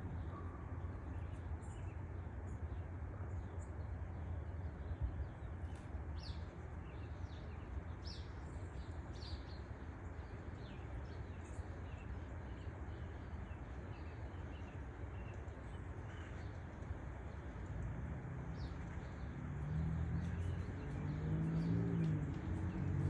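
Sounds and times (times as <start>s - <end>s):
small birds chirping: 4.7s - 23.0s.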